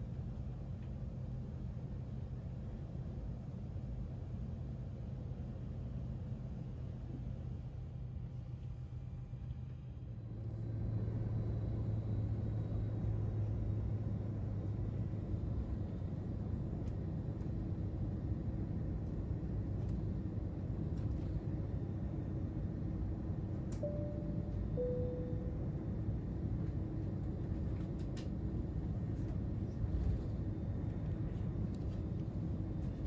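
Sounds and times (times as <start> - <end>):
vehicle rumble from inside: 0.1 - 33.0
two-note falling chime: 23.8 - 25.6.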